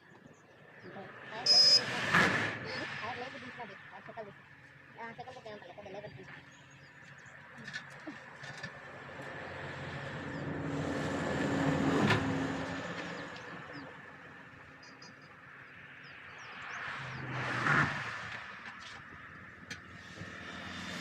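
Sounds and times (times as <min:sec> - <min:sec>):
vehicle engine passing by: 0:00.8 - 0:03.9, 0:08.1 - 0:14.8, 0:15.7 - 0:21.0
second vehicle approaching: 0:05.7 - 0:21.0.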